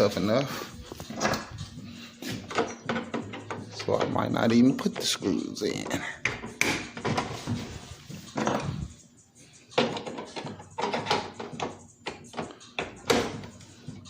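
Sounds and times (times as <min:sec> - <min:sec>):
taps and knocks of parts: 0:02.4 - 0:07.4, 0:09.8 - 0:13.6.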